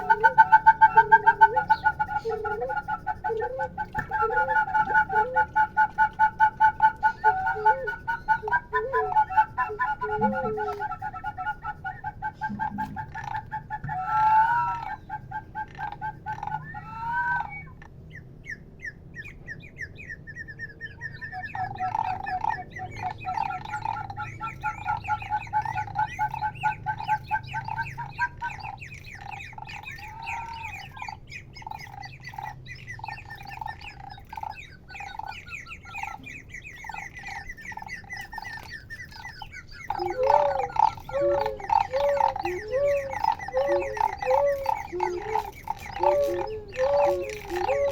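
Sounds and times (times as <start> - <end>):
lower rhythmic chirping: 0.0 - 47.9
squeaky bird-like chirps: 20.8 - 47.9.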